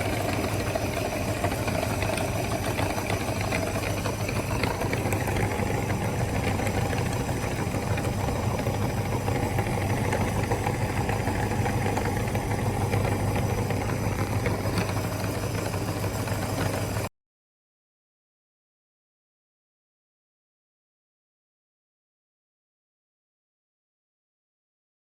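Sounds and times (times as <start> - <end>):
meat grinder humming: 0.0 - 17.1.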